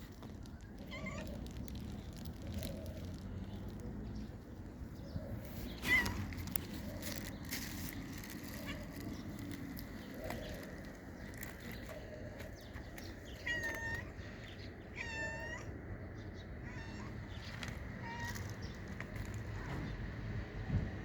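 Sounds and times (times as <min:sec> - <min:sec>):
cat meowing: 0:00.8 - 0:01.4, 0:13.4 - 0:14.1, 0:14.9 - 0:15.7, 0:16.6 - 0:17.3, 0:18.0 - 0:18.5.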